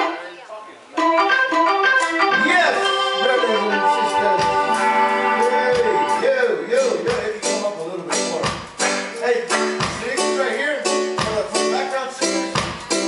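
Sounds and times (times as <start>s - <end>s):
reggae band playing: 0.0s - 13.0s
man singing: 2.8s - 8.4s
drum hits: 4.3s - 4.9s, 5.7s - 6.3s, 6.9s - 7.6s, 8.3s - 10.4s, 11.1s - 11.7s, 12.4s - 13.0s.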